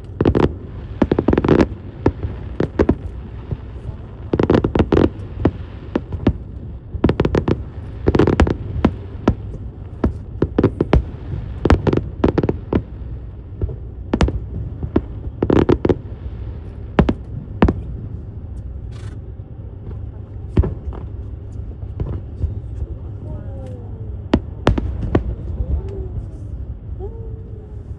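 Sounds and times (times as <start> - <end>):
fireworks bangs: 0.0 - 18.1, 24.4 - 25.9
steady low rumble: 0.0 - 27.9.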